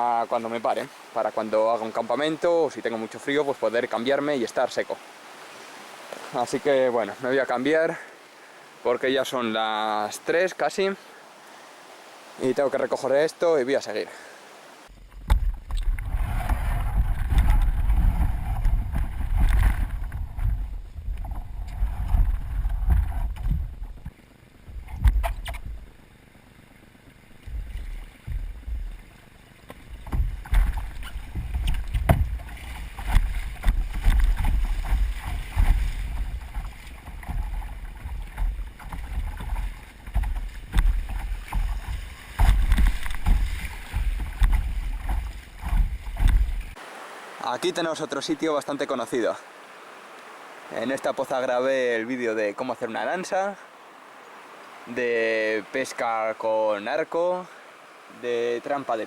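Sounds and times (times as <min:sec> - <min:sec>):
paddle strokes and splashes: 0:00.0 - 0:59.0
low rumble on microphone: 0:14.9 - 0:26.0.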